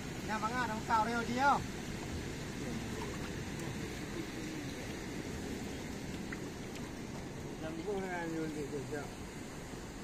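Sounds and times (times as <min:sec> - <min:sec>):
boat engine rumble: 0:00.0 - 0:10.0
steady hiss: 0:00.0 - 0:10.0.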